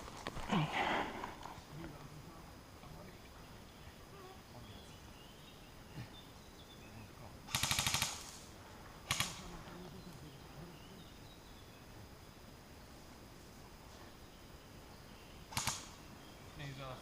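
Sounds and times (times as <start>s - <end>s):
airsoft gun firing: 7.5s - 9.5s, 15.5s - 16.0s.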